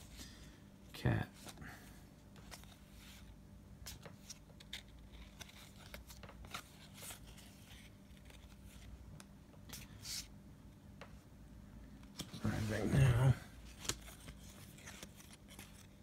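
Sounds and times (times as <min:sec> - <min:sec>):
trading cards clicking and rustling: 0:12.1 - 0:16.0.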